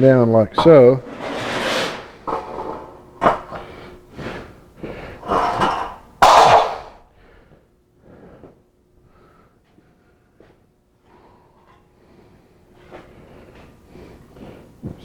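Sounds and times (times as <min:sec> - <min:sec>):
scaffold parts knocking and scraping: 0:00.6 - 0:04.2, 0:05.1 - 0:07.0.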